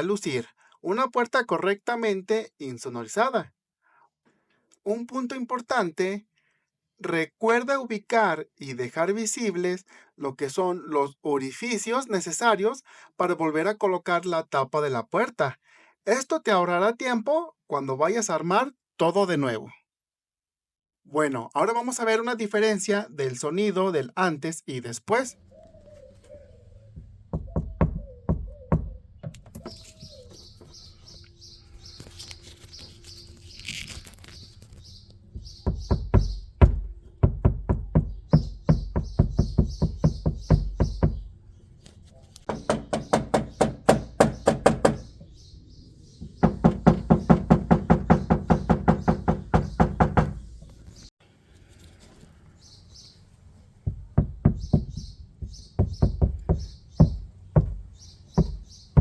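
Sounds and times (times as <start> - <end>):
birds chirping: 25.4 - 51.1, 52.2 - 59.0.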